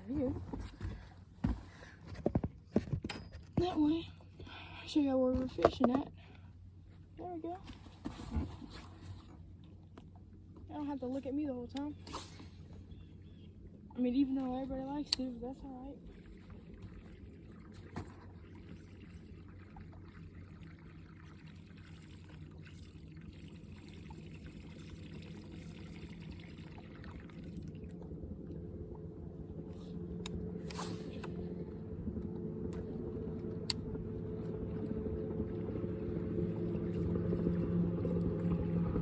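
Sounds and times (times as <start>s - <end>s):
boat motor humming: 0.0s - 39.0s
water lapping against a boat: 3.7s - 39.0s.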